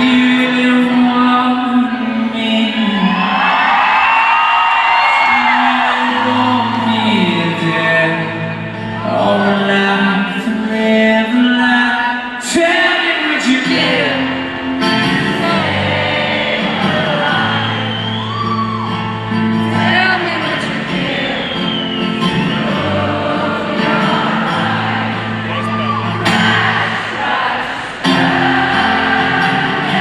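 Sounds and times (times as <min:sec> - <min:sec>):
person singing: 0:05.2 - 0:18.0, 0:19.4 - 0:21.6, 0:22.3 - 0:30.0
live rock band playing: 0:13.8 - 0:17.4, 0:21.9 - 0:27.5.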